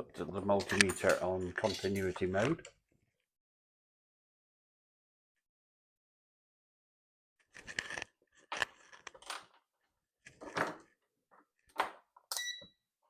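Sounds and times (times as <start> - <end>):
short electronic beep: 12.3 - 12.8.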